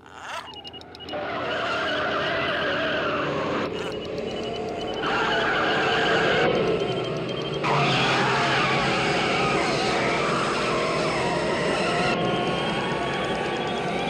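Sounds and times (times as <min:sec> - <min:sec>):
tyres squealing: 0:00.0 - 0:06.4.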